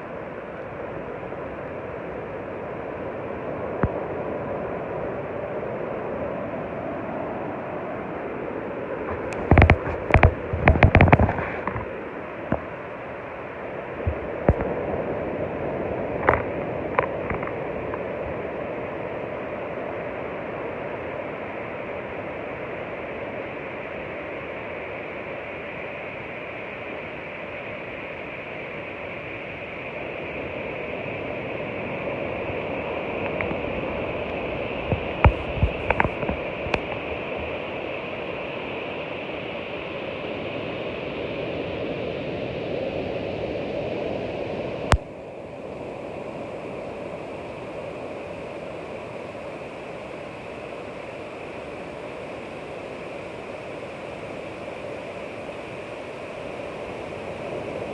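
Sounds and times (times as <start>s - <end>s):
ocean surf: 0.0s - 57.9s.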